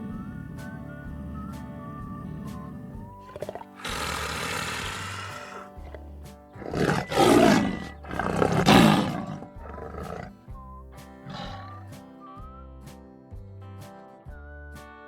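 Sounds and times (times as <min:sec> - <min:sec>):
background music: 0:00.0 - 0:15.0
lion roaring: 0:01.2 - 0:10.4, 0:11.3 - 0:11.9.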